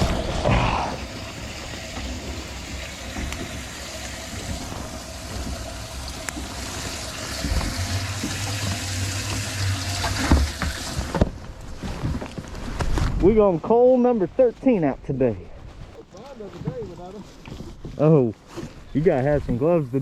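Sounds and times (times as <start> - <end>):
water trickling and splashing: 0.0 - 12.6.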